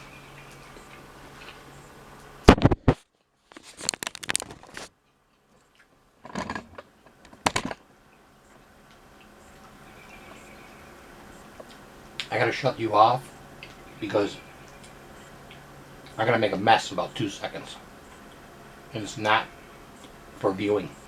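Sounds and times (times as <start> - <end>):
crunchy chewing and biting: 0.0 - 7.4.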